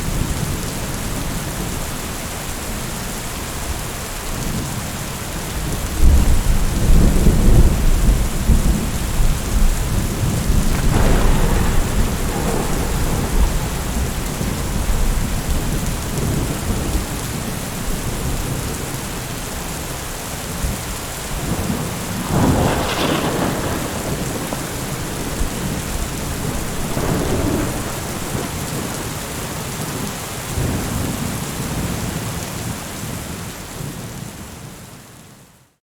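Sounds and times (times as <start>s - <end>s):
steady rain falling: 0.0s - 35.8s
rolling thunder: 5.6s - 19.6s, 20.5s - 32.0s
sharp thunderclap: 6.0s - 18.8s, 21.4s - 29.2s.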